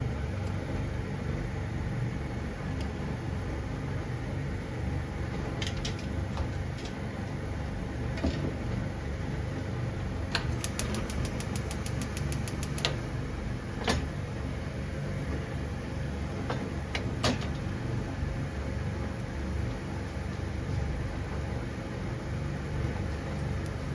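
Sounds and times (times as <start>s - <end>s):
steady low hum: 0.0s - 23.9s
quick run of clicks: 10.4s - 13.0s
sharp taps and knocks: 10.4s - 13.0s.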